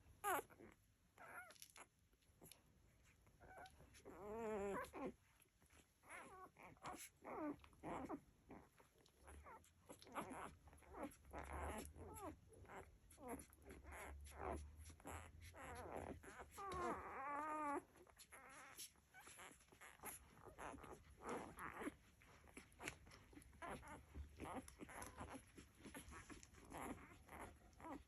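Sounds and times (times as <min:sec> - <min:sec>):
puppies whimpering: 0:00.0 - 0:28.0.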